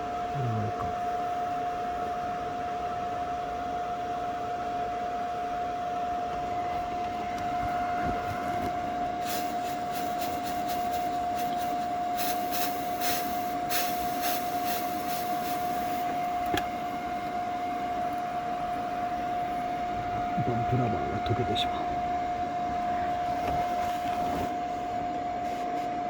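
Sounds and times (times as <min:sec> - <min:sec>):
welder hum: 0:06.3 - 0:25.9
welding arc crackling: 0:08.9 - 0:17.2.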